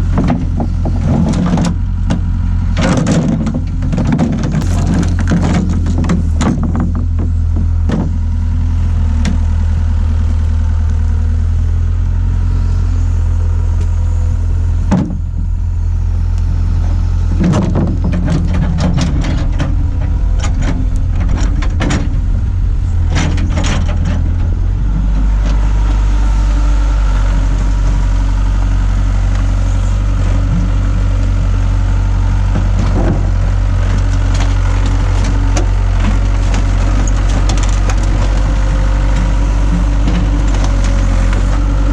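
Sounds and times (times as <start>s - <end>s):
excavator diesel engine running: 0.0s - 41.9s
sharp metal clanks and knocks: 17.4s - 25.6s.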